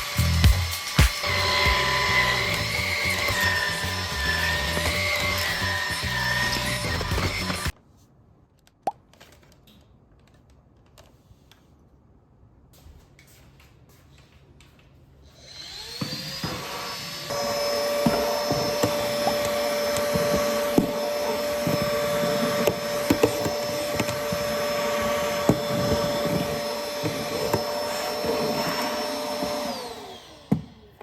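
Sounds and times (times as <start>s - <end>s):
stick vacuum motor whine: 0.0s - 7.8s, 15.4s - 31.0s.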